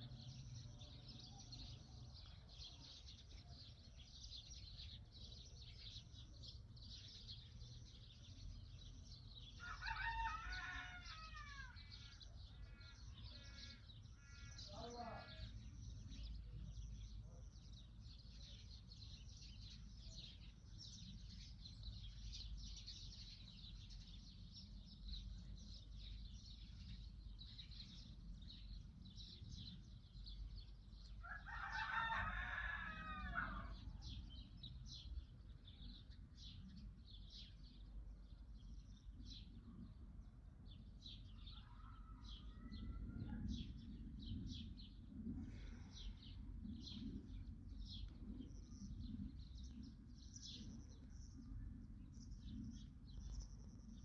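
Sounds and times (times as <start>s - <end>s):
small birds chirping: 0.0s - 54.0s
rooster crowing: 9.6s - 11.9s, 31.2s - 33.8s, 41.5s - 43.5s.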